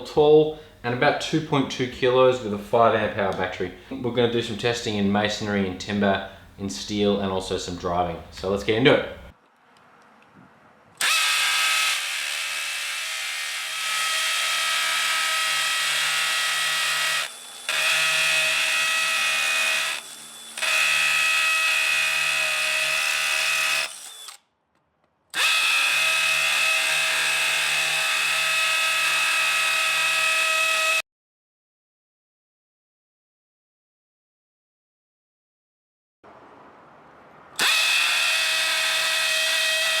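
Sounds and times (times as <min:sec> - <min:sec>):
hammer drill whining: 0:11.0 - 0:24.4, 0:25.4 - 0:31.0, 0:37.6 - 0:40.0.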